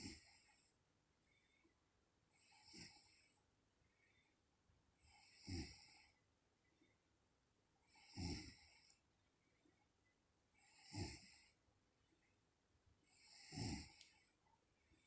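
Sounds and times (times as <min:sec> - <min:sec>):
woman snoring: 0:02.5 - 0:03.2, 0:05.1 - 0:06.0, 0:07.9 - 0:08.9, 0:10.7 - 0:11.5, 0:13.2 - 0:14.1.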